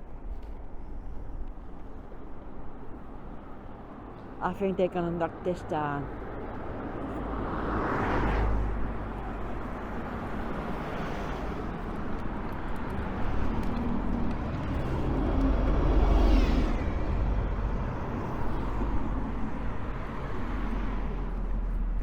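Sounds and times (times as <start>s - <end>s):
vehicle passing: 5.3s - 22.0s.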